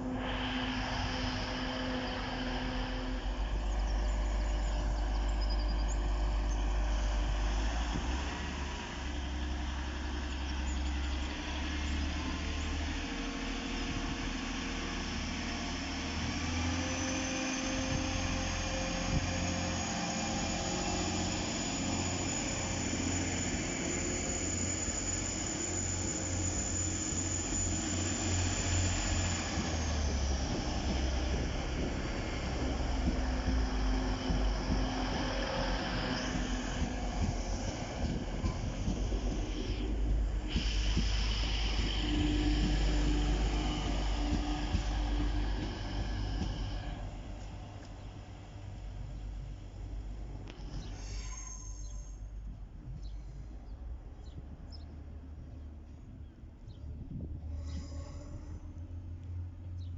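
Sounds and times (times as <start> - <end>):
diesel train engine rumbling: 0.0 - 59.9
thin high whine: 17.0 - 32.8.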